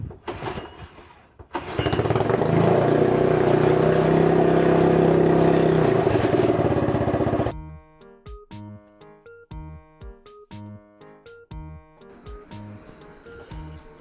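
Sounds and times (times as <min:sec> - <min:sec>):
outboard motor starting and running: 0:00.2 - 0:07.5.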